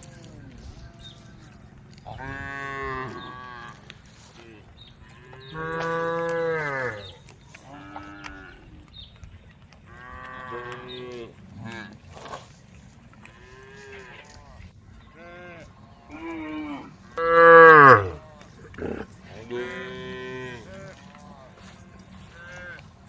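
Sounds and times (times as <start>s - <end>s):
cows mooing: 5.6s - 8.1s, 17.2s - 19.4s.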